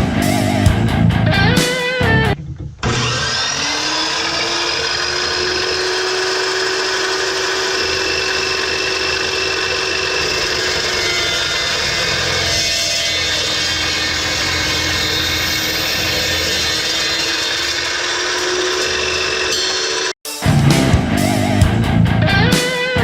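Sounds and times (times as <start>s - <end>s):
metal chop saw running: 2.8s - 20.2s
background music: 20.3s - 23.0s.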